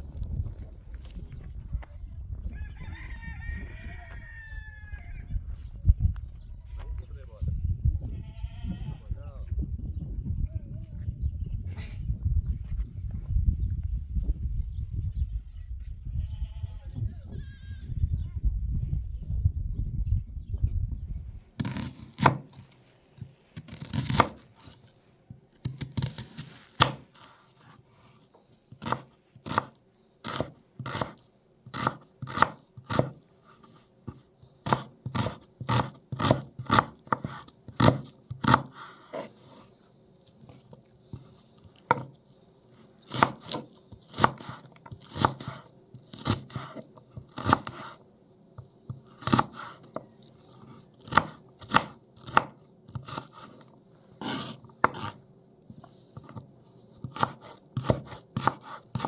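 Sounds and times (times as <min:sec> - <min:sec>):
knife chopping on cutting board: 0:21.6 - 0:22.7, 0:23.6 - 0:24.8, 0:25.6 - 0:27.8, 0:28.8 - 0:39.6, 0:41.9 - 0:42.1, 0:43.1 - 0:48.0, 0:49.0 - 0:53.6, 0:54.2 - 0:55.2, 0:57.0 - 0:59.0.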